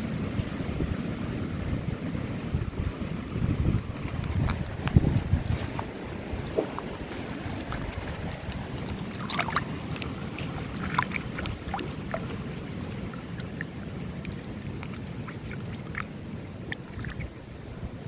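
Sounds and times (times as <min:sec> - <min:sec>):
creek water over stones: 0:00.0 - 0:18.0
small splashes and plinks: 0:06.4 - 0:17.8.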